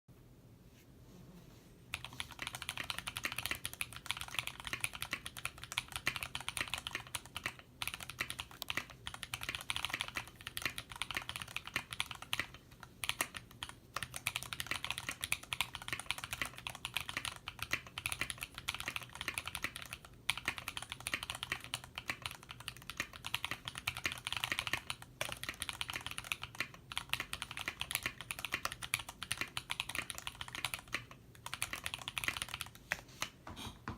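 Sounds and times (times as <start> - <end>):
mechanical keyboard typing: 1.9 - 33.4.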